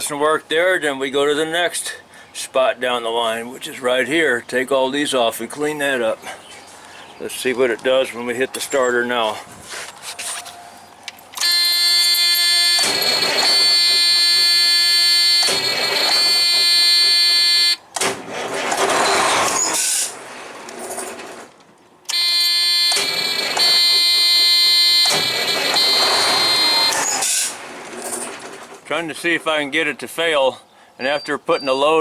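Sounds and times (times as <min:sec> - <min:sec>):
high piercing warning buzzer: 0:11.4 - 0:17.8, 0:22.1 - 0:27.5.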